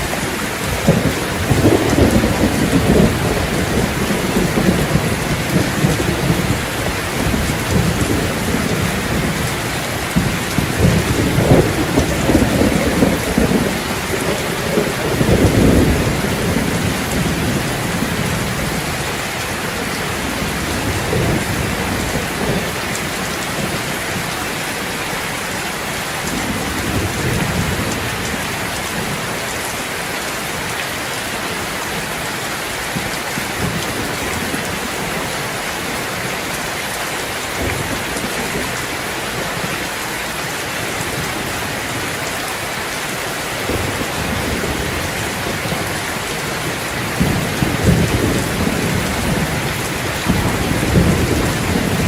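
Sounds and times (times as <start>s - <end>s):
low thunder rumbling: 0.0s - 24.4s, 43.6s - 52.0s
heavy rain hissing: 0.0s - 52.0s.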